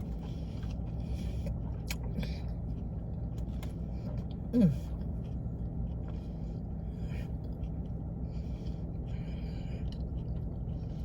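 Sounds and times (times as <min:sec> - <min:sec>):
person chewing sandwich: 0:00.0 - 0:11.0
steady low hum: 0:00.0 - 0:11.0
breaths: 0:00.2 - 0:02.6, 0:06.0 - 0:10.1.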